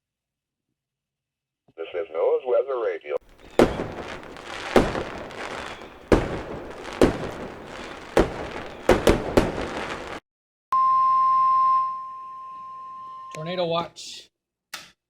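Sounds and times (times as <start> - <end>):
constant hiss: 3.3 - 10.2
sharp cracks and pops: 3.3 - 10.2.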